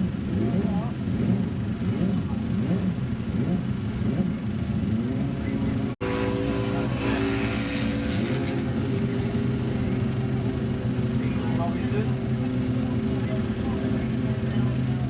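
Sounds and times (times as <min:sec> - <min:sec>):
engine idling: 0:00.0 - 0:15.0
motorcycle engine: 0:00.0 - 0:15.0
voices: 0:05.2 - 0:15.0.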